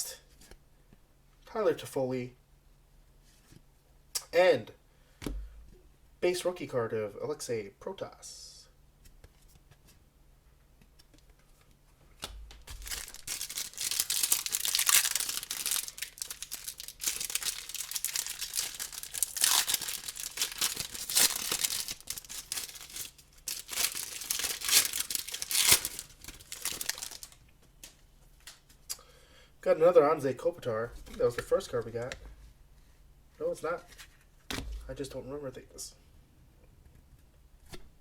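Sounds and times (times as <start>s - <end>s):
paper and plastic rustling: 12.6s - 28.0s
wrapper tearing and crinkling: 12.6s - 28.0s.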